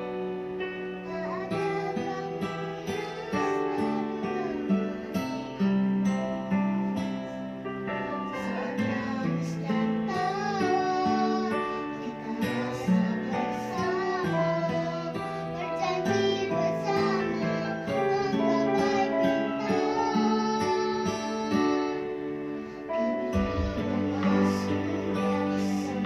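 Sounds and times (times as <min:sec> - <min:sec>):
acoustic guitar strumming: 0:00.0 - 0:26.0
person singing with vibrato: 0:01.0 - 0:06.2, 0:08.0 - 0:26.0.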